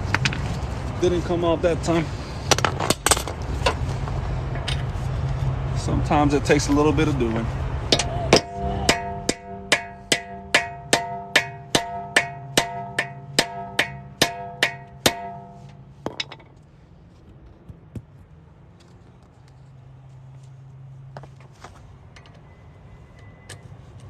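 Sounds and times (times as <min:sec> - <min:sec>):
hammer striking metal socket: 0:07.9 - 0:16.5.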